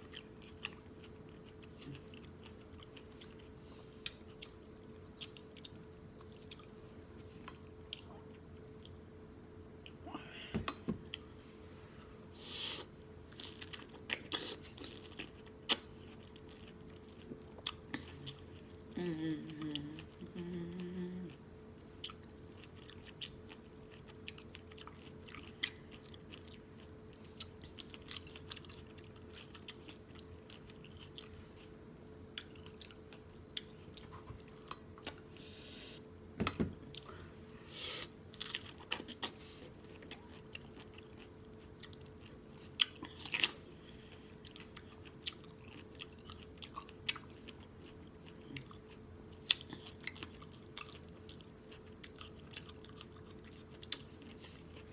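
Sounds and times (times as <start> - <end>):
chewing and lip-smacking: 0.0 - 9.0, 12.8 - 18.8, 19.5 - 35.3, 38.1 - 54.9
person humming: 18.9 - 21.4.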